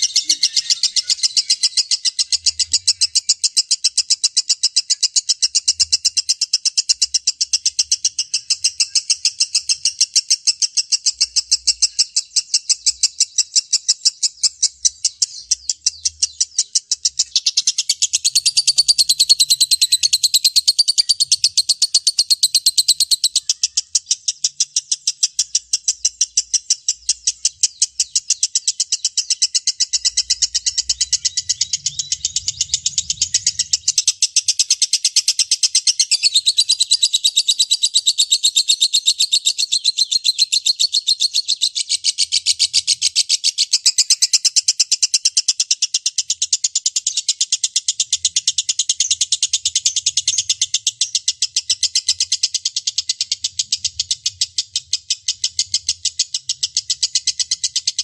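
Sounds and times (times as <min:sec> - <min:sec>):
lovebird chattering: 0:00.0 - 0:58.0.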